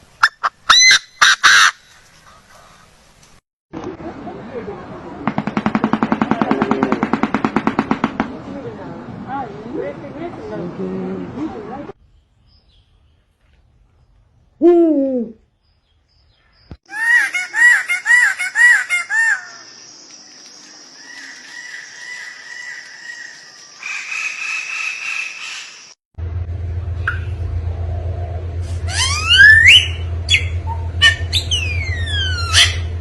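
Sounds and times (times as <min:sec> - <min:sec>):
bird calls: 0:15.3 - 0:26.0, 0:28.9 - 0:33.0
low hum: 0:26.2 - 0:33.0
whistled bird notes: 0:28.9 - 0:32.9.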